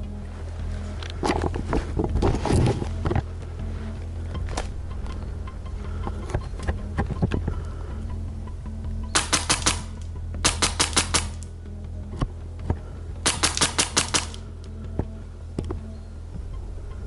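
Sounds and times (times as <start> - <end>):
background music: 0.0 - 17.0
airsoft single shots: 9.2 - 11.4, 13.3 - 14.4
rapid airsoft gunfire: 9.2 - 11.4, 13.2 - 14.4.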